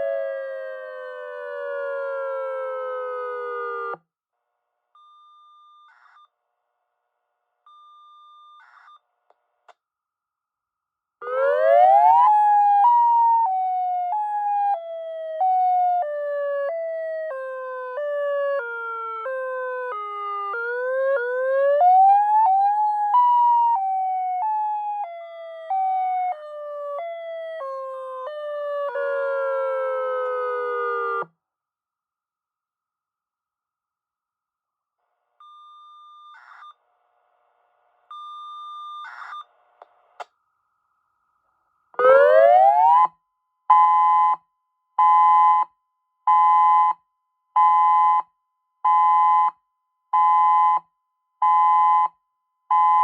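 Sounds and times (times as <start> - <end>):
electronic warning siren wailing: 0.0 - 4.0, 11.2 - 31.3, 42.0 - 43.1, 52.7 - 53.0.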